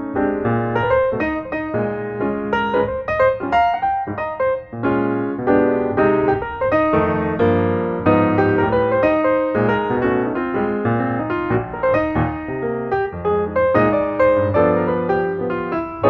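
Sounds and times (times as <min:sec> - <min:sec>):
piano melody over chords: 0:00.0 - 0:16.0.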